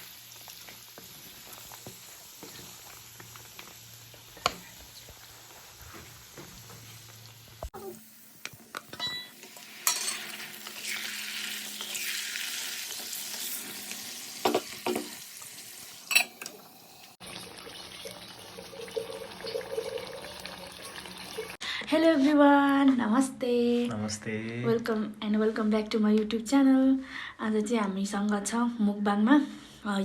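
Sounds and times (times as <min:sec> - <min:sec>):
food frying with loud sizzle: 0:00.0 - 0:21.6.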